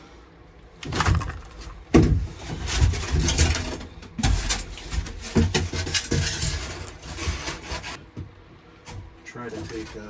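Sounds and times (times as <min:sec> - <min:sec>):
insulation scraping and rubbing: 0:01.0 - 0:08.1, 0:09.3 - 0:10.0.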